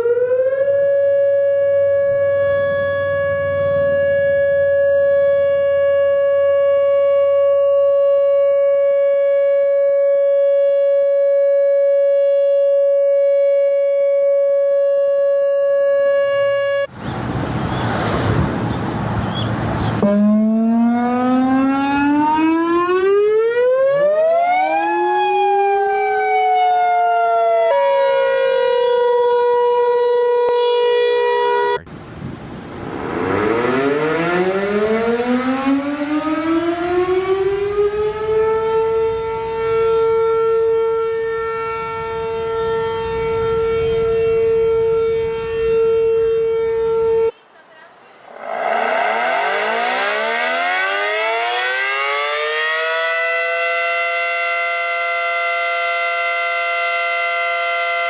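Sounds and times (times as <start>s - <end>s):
tornado warning siren: 0.0s - 58.0s
siren tone sweeping up and down: 19.7s - 47.3s, 47.9s - 58.0s
loud rushing noise: 31.8s - 35.2s, 47.9s - 51.4s.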